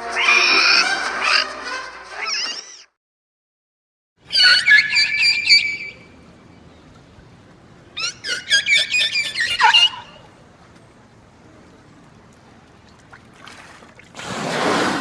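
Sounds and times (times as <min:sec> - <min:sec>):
dinosaur high-pitched squawks: 0:00.0 - 0:01.6, 0:04.3 - 0:06.0, 0:08.0 - 0:10.2.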